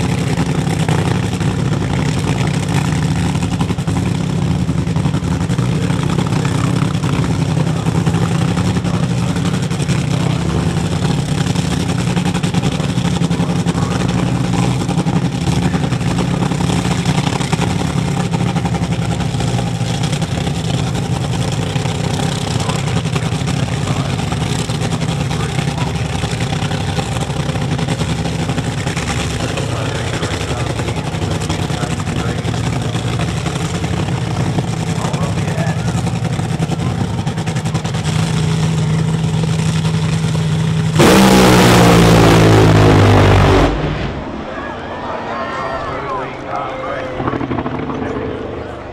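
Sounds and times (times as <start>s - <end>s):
race car engine idling loudly: 0.0s - 48.9s.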